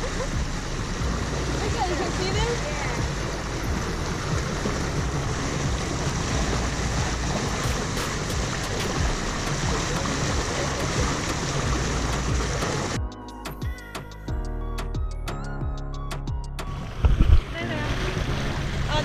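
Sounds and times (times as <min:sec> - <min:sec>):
water rushing along a hull: 0:00.0 - 0:13.0
wind rumbling on microphone: 0:00.0 - 0:13.0, 0:13.8 - 0:19.0
music: 0:00.0 - 0:19.0.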